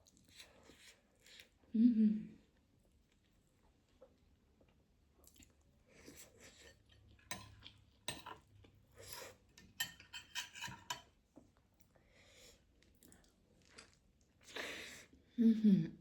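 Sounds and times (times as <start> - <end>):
utensils clinking against dishes: 9.8 - 11.1.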